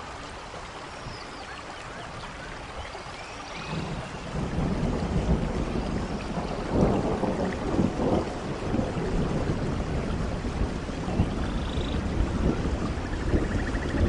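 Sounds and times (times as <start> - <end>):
rain falling in forest: 0.0 - 14.0
rumble of thunder: 3.6 - 14.0.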